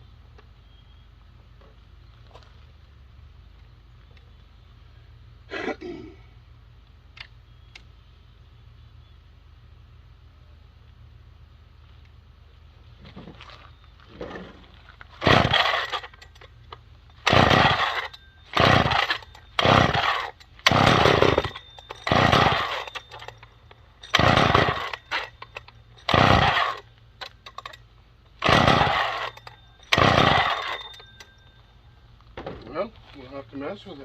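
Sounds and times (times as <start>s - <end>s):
chainsaw engine turning over: 14.1s - 31.6s
chainsaw recoil starter pulls: 15.2s - 31.3s.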